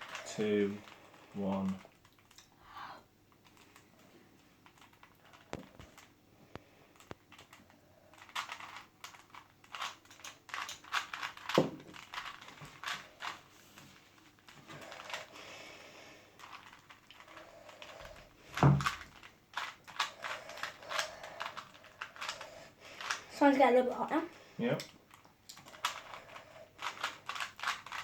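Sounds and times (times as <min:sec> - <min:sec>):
puzzle cube clicking: 0:07.0 - 0:13.4, 0:18.8 - 0:23.2.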